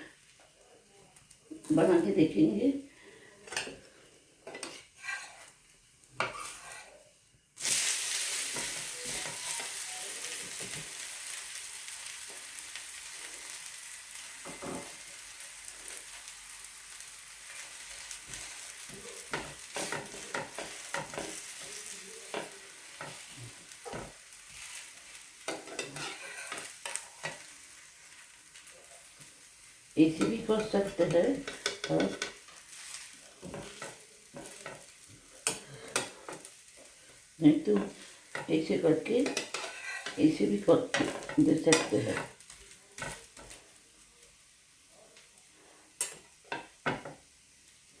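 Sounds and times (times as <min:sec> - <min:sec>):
batter sizzling in hot oil: 0:00.0 - 0:48.0
kitchen utensil taps and scrapes: 0:04.4 - 0:05.5, 0:06.2 - 0:06.8, 0:31.0 - 0:32.4, 0:46.0 - 0:47.2.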